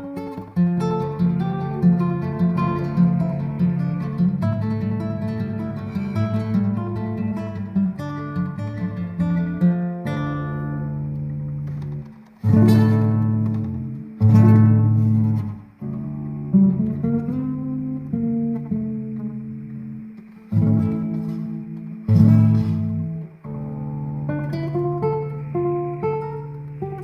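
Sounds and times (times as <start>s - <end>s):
acoustic guitar strumming and picking: 0.0s - 27.0s.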